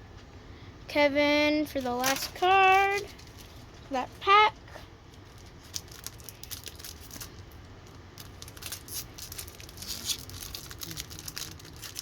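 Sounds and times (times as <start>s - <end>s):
foil wrapper crinkling: 1.9s - 4.2s, 5.1s - 12.0s.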